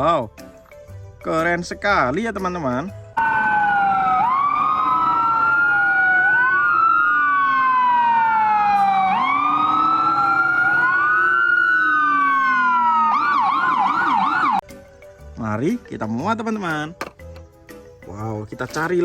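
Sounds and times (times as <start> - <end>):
wailing ambulance siren: 3.2 - 14.6.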